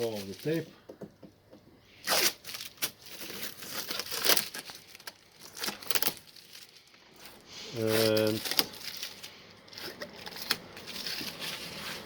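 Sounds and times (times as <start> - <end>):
adhesive tape ripping: 1.9 - 7.0, 7.7 - 12.0.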